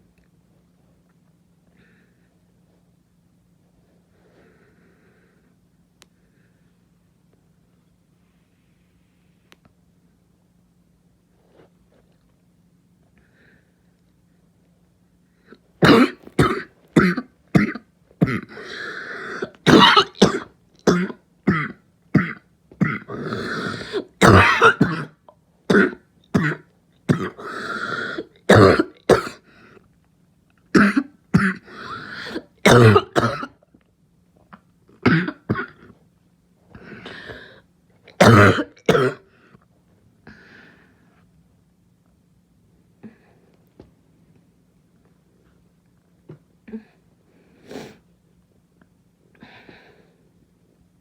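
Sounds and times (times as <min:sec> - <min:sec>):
noisy breaths: 0:03.7 - 0:07.0, 0:40.2 - 0:41.4
person barking cough: 0:15.8 - 0:18.6, 0:19.6 - 0:27.4, 0:28.5 - 0:29.4, 0:30.8 - 0:33.6, 0:38.2 - 0:39.2.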